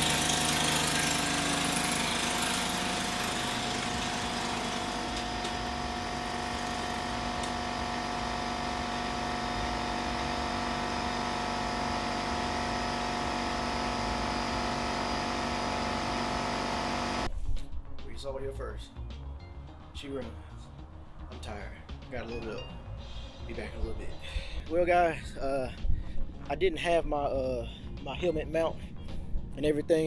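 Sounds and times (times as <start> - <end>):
small engine running: 0.0 - 17.3.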